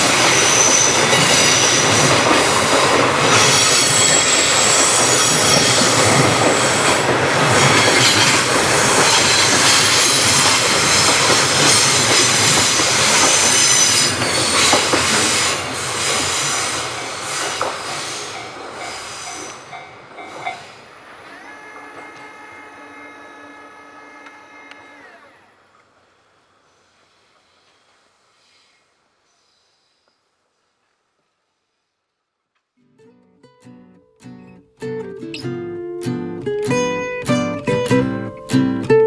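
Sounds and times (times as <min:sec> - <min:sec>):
rumble of train wagons: 0:00.0 - 0:23.3
train wheels squealing: 0:00.0 - 0:24.2.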